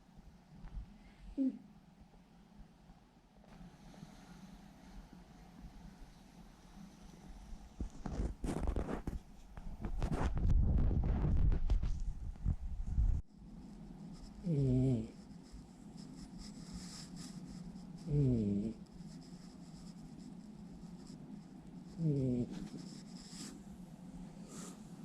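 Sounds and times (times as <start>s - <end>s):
steady low hum: 0.0s - 25.0s
cat snoring: 14.4s - 15.2s, 18.0s - 18.8s, 21.9s - 22.6s.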